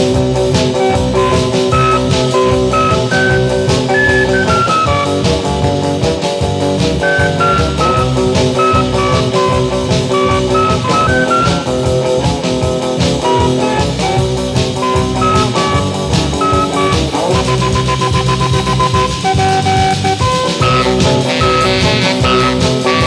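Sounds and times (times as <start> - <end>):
instrumental rock and roll: 0.0 - 23.0.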